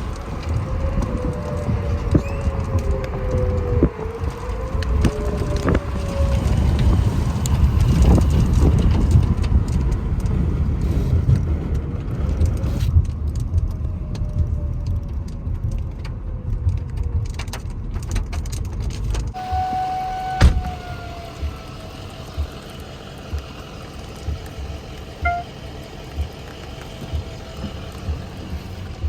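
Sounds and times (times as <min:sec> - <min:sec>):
heavy low rumble: 0:00.0 - 0:29.0
tornado warning sirens: 0:00.0 - 0:29.0.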